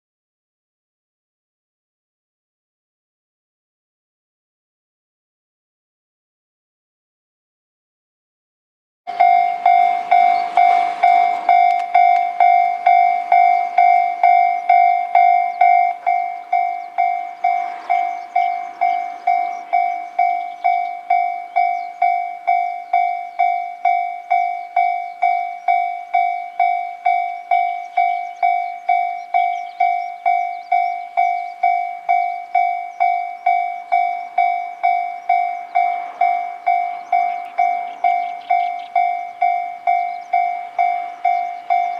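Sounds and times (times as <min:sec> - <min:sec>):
level-crossing electronic bell: 0:09.1 - 0:41.9.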